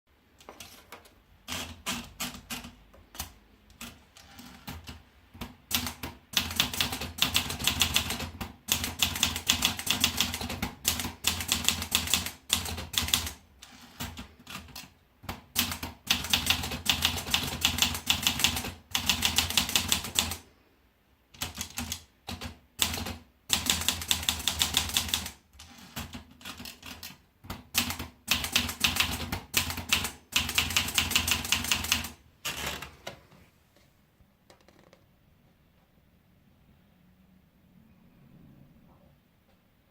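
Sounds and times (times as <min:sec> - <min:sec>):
typewriter keystrokes: 0:01.4 - 0:20.4, 0:21.3 - 0:33.1.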